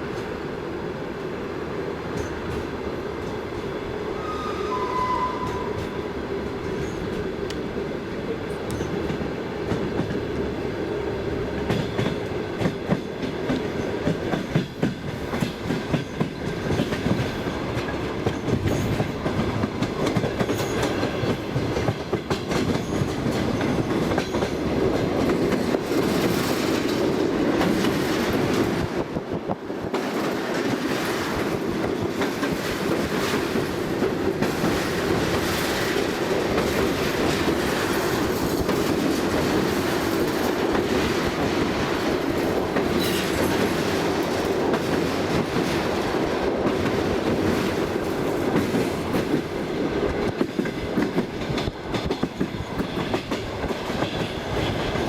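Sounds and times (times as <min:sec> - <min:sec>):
train rumbling along track: 0:00.0 - 0:55.0
train wheels clickety-clack: 0:02.1 - 0:03.8, 0:05.2 - 0:07.8, 0:08.4 - 0:10.8, 0:11.4 - 0:55.0.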